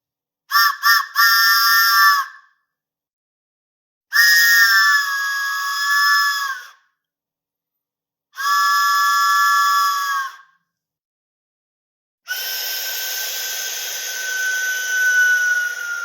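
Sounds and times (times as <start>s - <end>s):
hissing with steady tone: 12.5s - 16.0s
cartoon train whistle chord: 13.4s - 16.0s.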